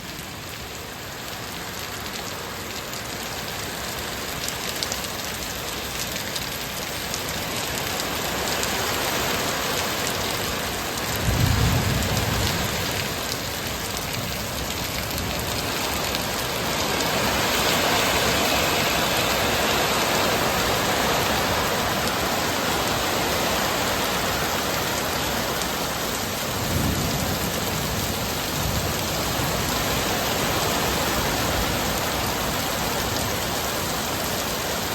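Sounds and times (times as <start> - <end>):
heavy rain pouring: 0.0 - 34.9
thunder rumbling: 11.2 - 13.3, 26.4 - 30.0.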